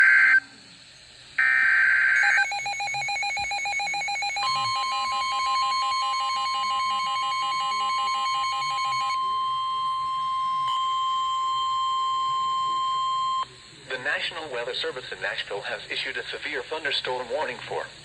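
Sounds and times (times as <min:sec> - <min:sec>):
steady warning alarm tone: 0:01.4 - 0:13.6
rapid electronic alarm beeps: 0:02.2 - 0:13.5.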